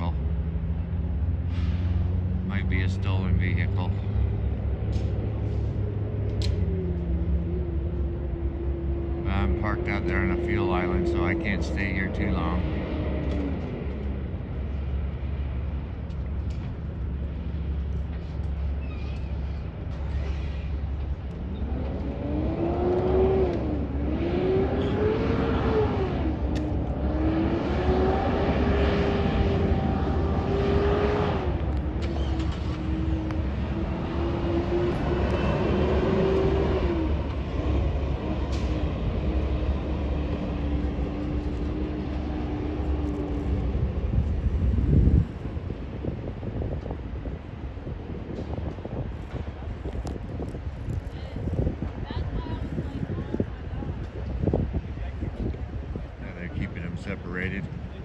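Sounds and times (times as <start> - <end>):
vehicle engine accelerating: 0.0 - 58.0.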